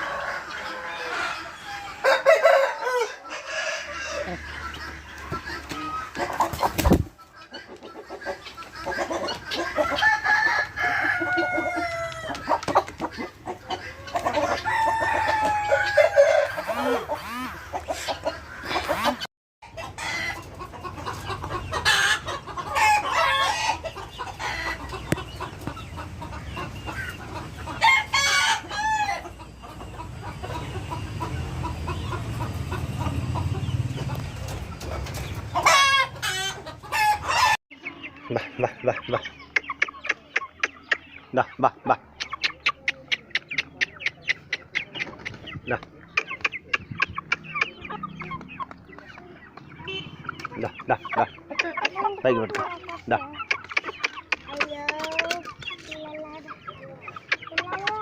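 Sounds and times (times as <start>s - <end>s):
roosters crowing: 0.0s - 39.3s
chickens clucking: 0.0s - 58.0s.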